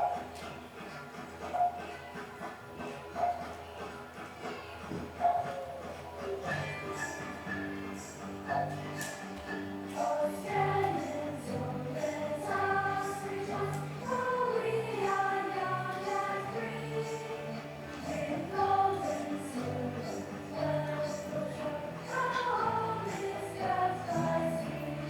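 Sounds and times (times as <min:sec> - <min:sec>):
choir singing held notes: 0:03.3 - 0:25.0.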